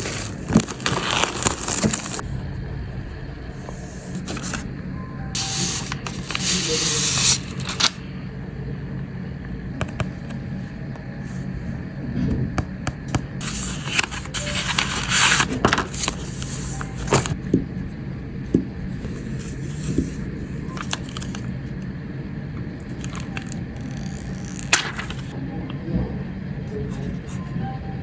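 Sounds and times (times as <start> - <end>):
plastic film rustling: 0.0 - 2.2, 4.1 - 4.6, 5.4 - 8.0, 13.4 - 17.4, 20.6 - 21.6, 22.8 - 25.4
steady low hum: 0.0 - 28.0.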